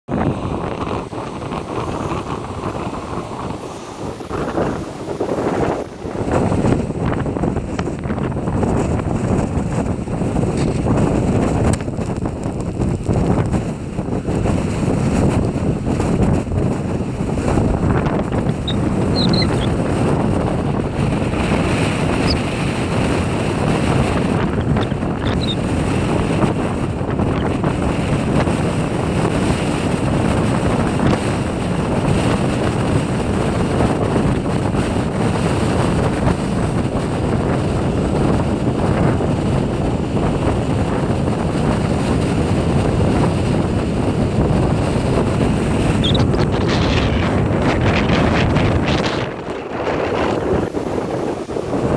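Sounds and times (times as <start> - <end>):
wind buffeting microphone: 0.0 - 51.9
surf breaking: 0.1 - 38.4.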